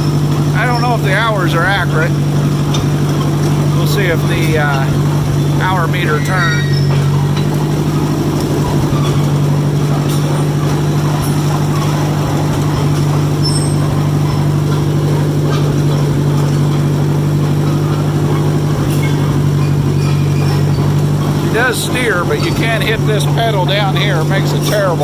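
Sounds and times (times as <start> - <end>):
crawler engine running: 0.0 - 25.0.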